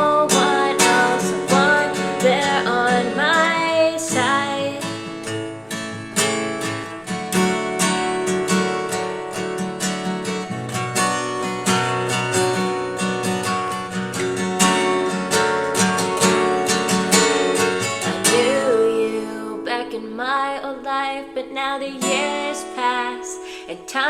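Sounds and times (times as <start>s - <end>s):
acoustic guitar strumming: 0.0s - 24.0s.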